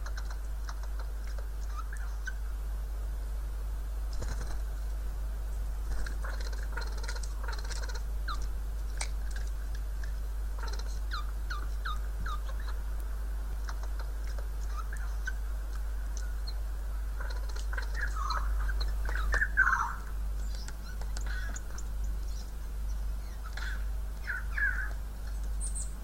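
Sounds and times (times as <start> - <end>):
bird whining calls: 1.6 - 2.5, 10.6 - 12.8, 13.6 - 15.5, 16.2 - 26.0
faint clicking: 15.7 - 16.3, 18.8 - 22.6.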